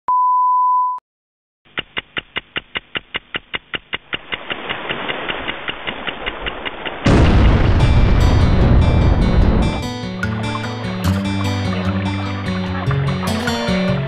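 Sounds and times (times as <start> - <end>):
rapid even ticking: 1.7 - 7.7
rushing noise: 7.0 - 9.9.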